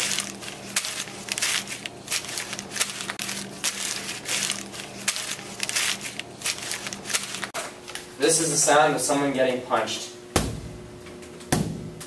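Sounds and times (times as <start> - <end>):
footsteps crunching dry leaves: 0.0 - 7.6.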